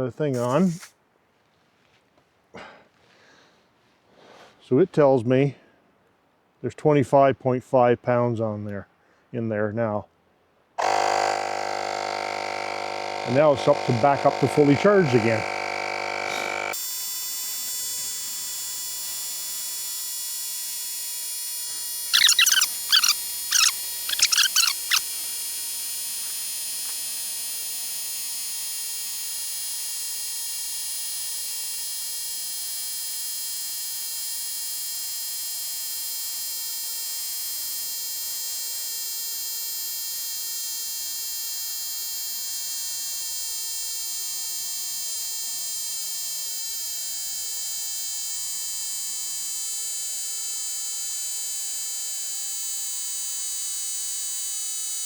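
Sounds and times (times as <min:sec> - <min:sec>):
tire inflator electric whine: 0:10.8 - 0:34.7
loud high chirps: 0:22.1 - 0:25.2.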